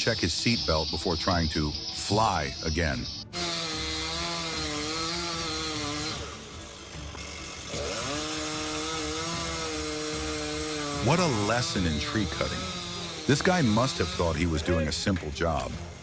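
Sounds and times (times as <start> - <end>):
chainsaw revving: 3.3 - 15.0.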